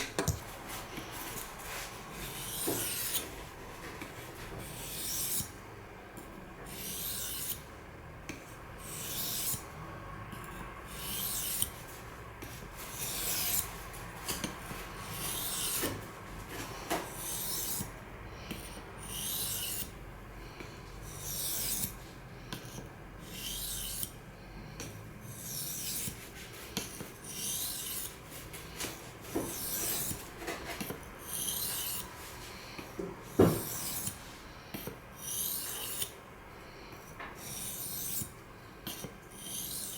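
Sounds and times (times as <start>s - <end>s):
knife scraping on sharpening stone: 2.3s - 3.2s, 4.7s - 5.5s, 6.7s - 7.6s, 8.8s - 9.6s, 10.4s - 11.7s, 12.9s - 13.6s, 15.1s - 15.8s, 17.2s - 17.9s, 18.5s - 19.9s, 21.0s - 24.1s, 25.2s - 26.2s, 26.8s - 28.2s, 29.4s - 32.1s, 33.5s - 36.2s, 37.4s - 39.9s.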